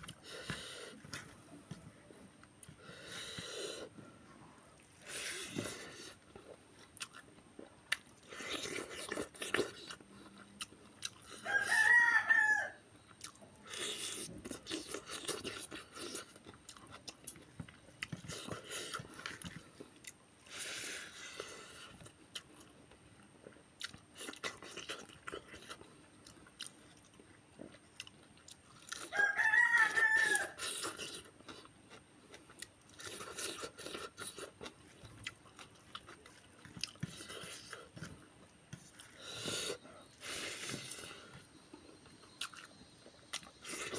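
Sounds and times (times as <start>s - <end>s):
person chewing and crunching: 0.0s - 1.5s, 4.8s - 43.9s
rooster crowing: 11.4s - 12.8s, 29.0s - 30.6s.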